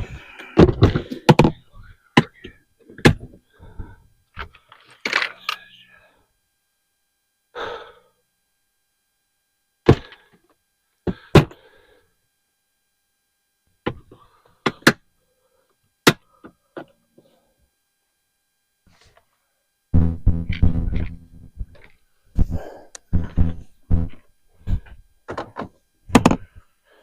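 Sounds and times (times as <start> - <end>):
hard objects thunking and knocking: 0.6 - 1.6, 20.0 - 26.5.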